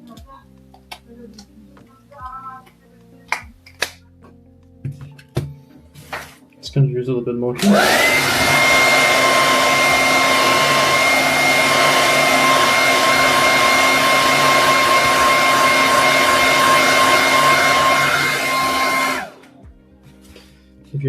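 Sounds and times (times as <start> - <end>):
hair dryer running: 7.6 - 19.6.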